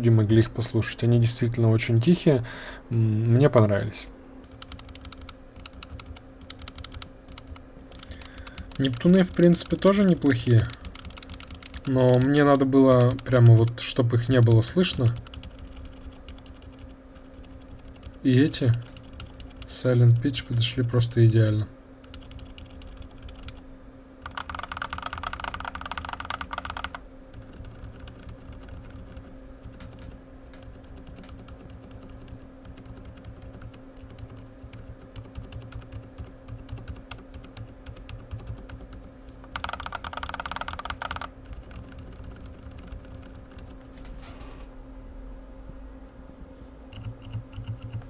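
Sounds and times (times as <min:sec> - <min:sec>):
soft muted keyboard typing: 0:04.4 - 0:21.1, 0:22.0 - 0:23.6, 0:24.2 - 0:44.6, 0:46.9 - 0:48.0.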